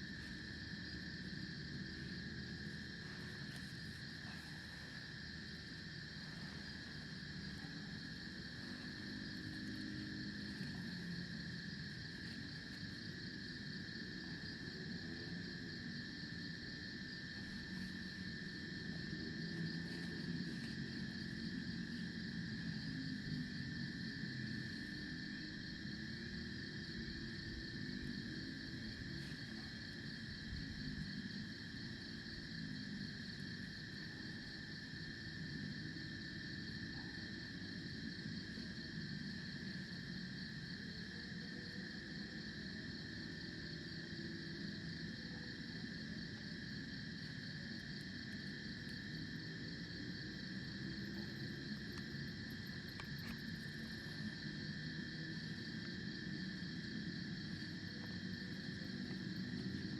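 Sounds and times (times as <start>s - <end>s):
crickets and insects trilling: 0.0s - 59.9s.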